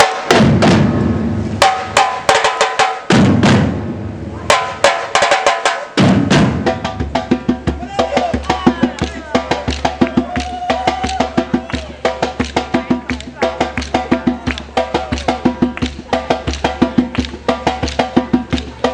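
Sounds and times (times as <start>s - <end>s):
snare drum strikes: 0.0s - 3.9s
drum group playing samba beat: 0.0s - 18.9s
bass drum hits: 0.2s - 2.4s, 3.1s - 5.0s, 6.0s - 9.6s.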